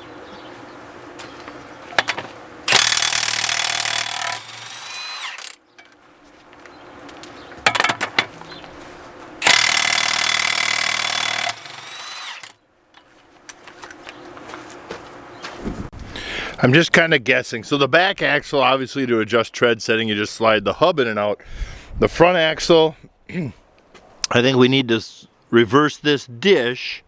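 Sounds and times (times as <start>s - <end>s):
impact wrench running: 2.0s - 5.6s, 9.4s - 12.6s.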